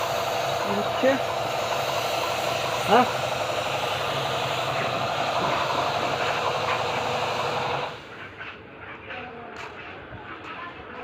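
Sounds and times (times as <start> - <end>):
spray gun hissing: 0.0 - 8.1
machine hum: 0.0 - 8.3.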